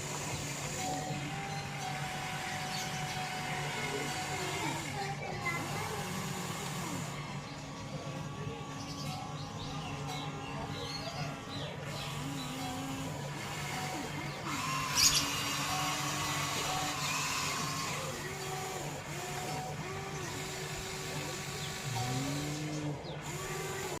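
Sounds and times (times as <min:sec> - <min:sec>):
steady low hum: 0:00.0 - 0:24.0
toy electric motors whining: 0:00.0 - 0:24.0.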